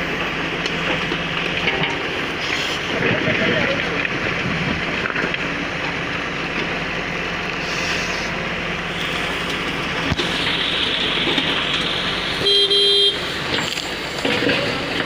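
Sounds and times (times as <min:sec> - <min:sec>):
earth-moving machine engine: 0:00.0 - 0:12.5, 0:13.2 - 0:15.0
horn toot: 0:12.4 - 0:13.2.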